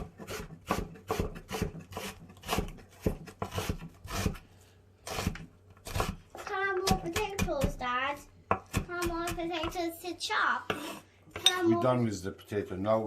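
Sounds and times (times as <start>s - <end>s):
knife chopping vegetables on board: 0.0s - 4.4s, 5.0s - 7.9s, 8.5s - 9.9s.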